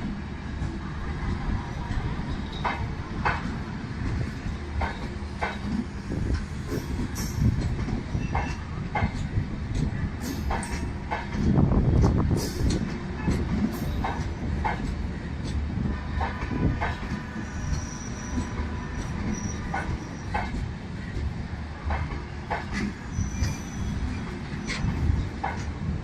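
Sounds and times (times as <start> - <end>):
train coaches rumbling on rails: 0.0 - 26.0
wheel clacks over rail joints: 2.0 - 25.9
high-pitched wheel squeals: 17.4 - 20.4, 23.1 - 24.9.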